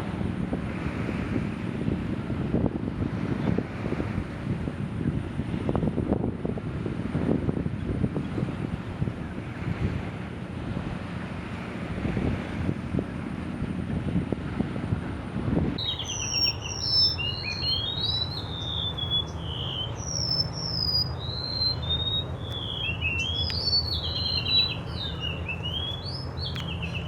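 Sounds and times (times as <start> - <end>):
songbird singing: 15.8 - 27.0.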